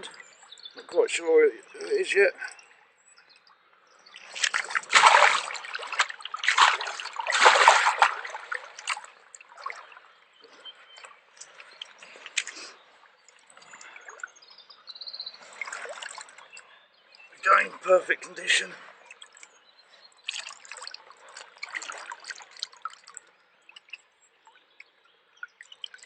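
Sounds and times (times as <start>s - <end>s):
water dripping: 1.6s - 17.9s, 18.9s - 26.0s
water splashing: 4.1s - 14.4s, 15.4s - 16.6s, 20.2s - 24.0s.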